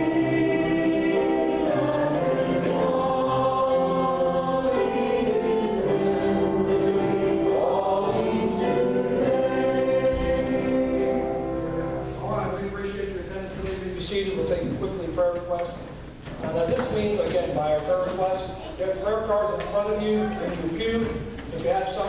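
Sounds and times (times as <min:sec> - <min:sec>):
congregation singing a hymn: 0:00.0 - 0:12.3.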